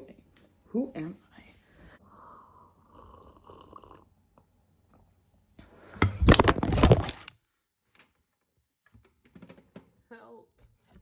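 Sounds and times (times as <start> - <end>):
person breathing heavily: 1.7 - 3.1.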